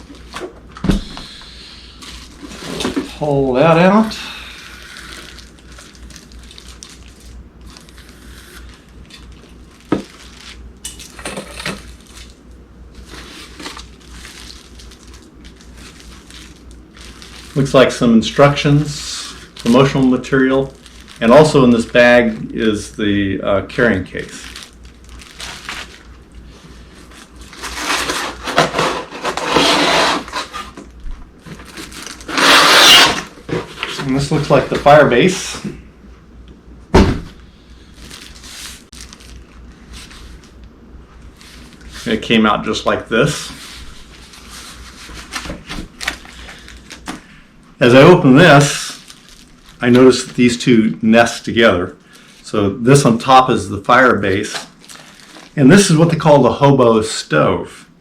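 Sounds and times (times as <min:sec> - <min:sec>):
packaging rustling and scraping: 0:02.0 - 0:04.1, 0:04.8 - 0:22.4, 0:24.0 - 0:35.8, 0:37.3 - 0:50.6, 0:54.2 - 0:55.6
cardboard and paper rustling: 0:24.2 - 0:35.7, 0:43.3 - 0:47.3.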